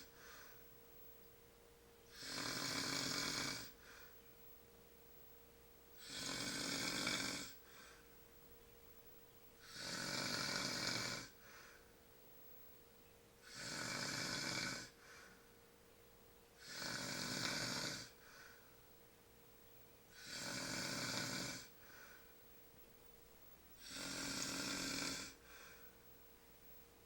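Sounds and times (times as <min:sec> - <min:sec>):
man snoring: 0:00.0 - 0:00.4, 0:02.1 - 0:03.8, 0:06.0 - 0:07.7, 0:09.6 - 0:11.4, 0:13.4 - 0:15.0, 0:16.6 - 0:18.2, 0:20.1 - 0:22.1, 0:23.8 - 0:25.8
faint breath: 0:00.0 - 0:00.8, 0:03.6 - 0:04.3, 0:07.5 - 0:08.2, 0:11.3 - 0:12.1, 0:14.9 - 0:15.6, 0:18.0 - 0:18.9, 0:21.6 - 0:22.6, 0:25.2 - 0:26.8.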